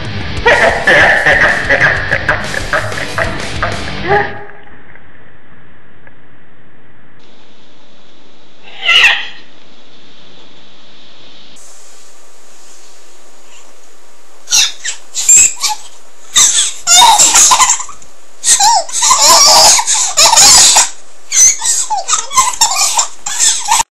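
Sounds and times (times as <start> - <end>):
silly vocal noises: 2.0 - 7.1, 8.6 - 9.5.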